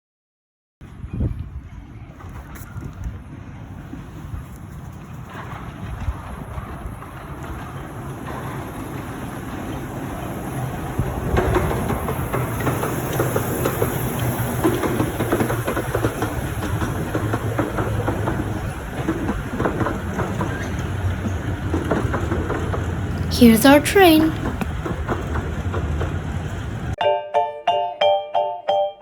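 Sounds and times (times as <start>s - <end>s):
miniature train wheels clattering: 4.7s - 23.2s, 24.4s - 27.0s.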